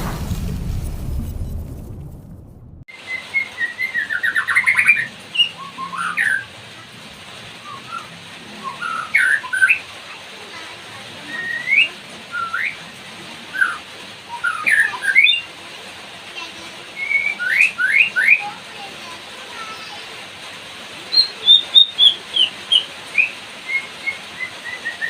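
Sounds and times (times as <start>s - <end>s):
rain falling: 0.0s - 25.0s
bird singing whistled notes: 2.9s - 6.5s, 7.6s - 9.8s, 11.2s - 12.8s, 17.0s - 18.5s, 21.1s - 25.0s.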